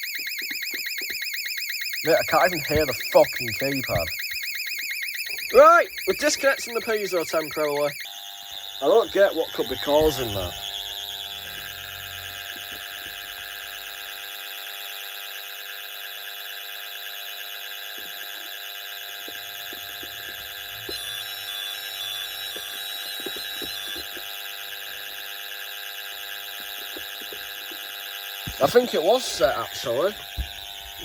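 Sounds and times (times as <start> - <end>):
shrill alarm sounder tone: 0.0 - 31.0
short high beeps: 5.2 - 8.1.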